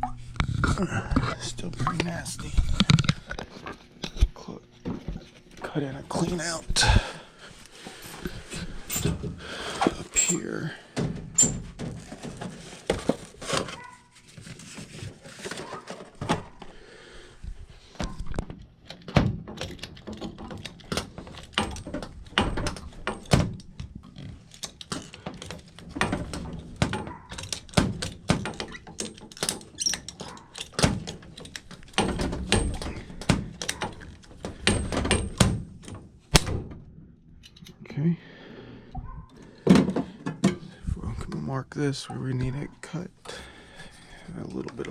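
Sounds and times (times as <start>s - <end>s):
pipe fittings and tools clattering: 7.8s - 13.8s, 18.8s - 36.0s.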